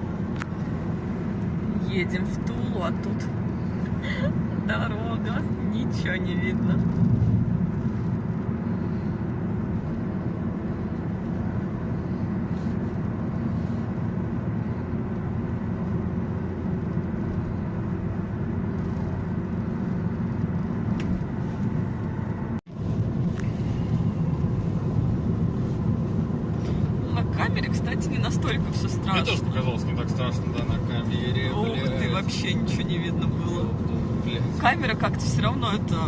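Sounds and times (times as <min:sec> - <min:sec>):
car road and engine rumble: 0:00.0 - 0:36.0.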